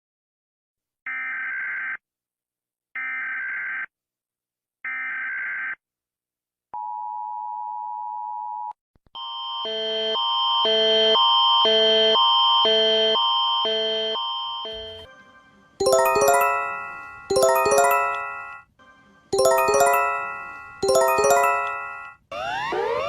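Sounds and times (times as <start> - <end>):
repeating multi-tone alarm: 15.8 - 18.6, 19.4 - 23.0.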